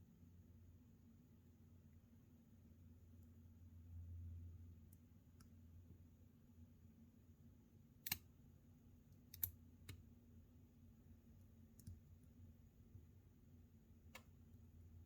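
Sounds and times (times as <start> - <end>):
lock pick clicking in padlock: 8.1 - 8.3.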